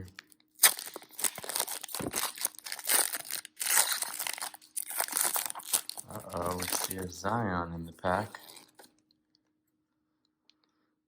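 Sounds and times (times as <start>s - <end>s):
plastic wrapper crinkling and tearing: 0.0s - 9.0s.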